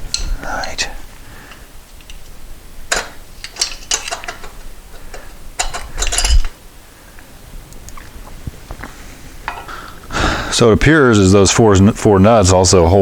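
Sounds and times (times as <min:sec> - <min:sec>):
metallic clinks of hand tools: 0:05.6 - 0:06.5.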